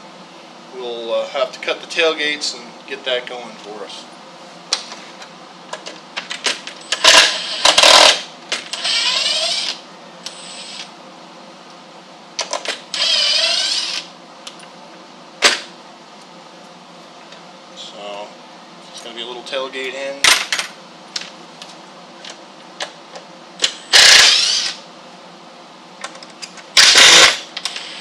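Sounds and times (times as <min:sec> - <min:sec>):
power drill motor whining: 0:08.7 - 0:10.9, 0:12.9 - 0:14.1, 0:23.9 - 0:24.8, 0:26.8 - 0:28.0.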